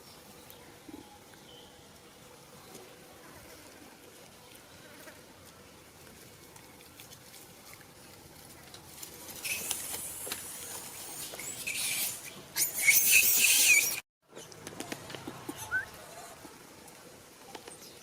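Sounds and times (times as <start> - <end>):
baby monkey screaming: 9.4 - 14.0.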